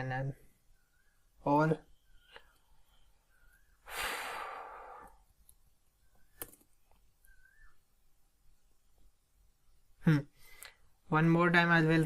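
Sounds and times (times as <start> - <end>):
man sighing: 3.9 - 5.2.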